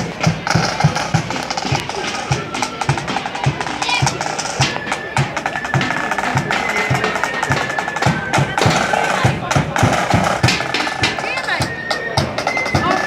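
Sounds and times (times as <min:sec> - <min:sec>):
flute melody: 0:00.0 - 0:13.0
snare drum strokes: 0:00.0 - 0:13.0.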